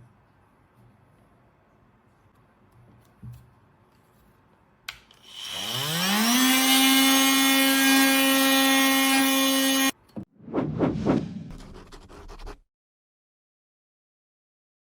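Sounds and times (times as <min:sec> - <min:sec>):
multi-tool motor whining: 0:05.2 - 0:09.9.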